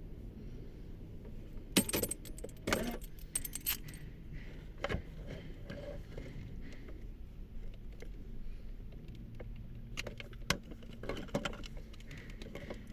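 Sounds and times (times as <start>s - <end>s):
metallic clicks and rattles: 1.8s - 4.0s.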